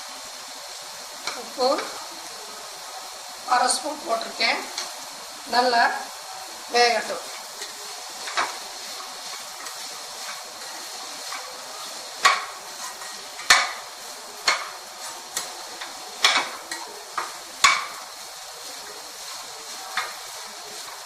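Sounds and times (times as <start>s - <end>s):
vegetables sizzling in a pan: 0.0s - 21.0s
spoon scraping a pan: 5.9s - 21.0s.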